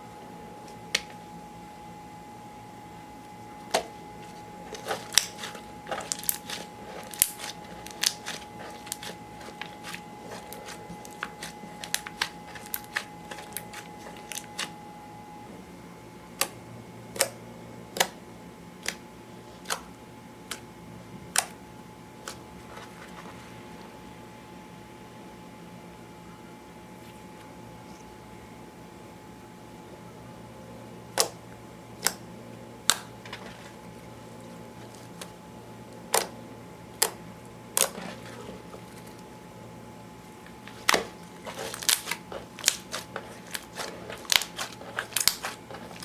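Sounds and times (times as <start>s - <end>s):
slime clicking and popping: 4.7s - 14.7s, 40.7s - 46.0s.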